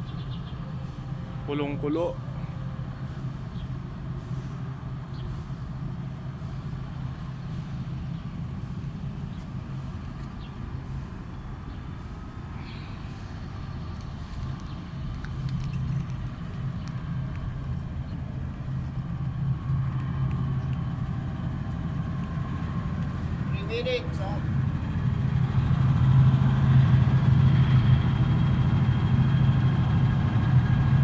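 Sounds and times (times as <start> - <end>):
generator engine humming: 0.0 - 31.0.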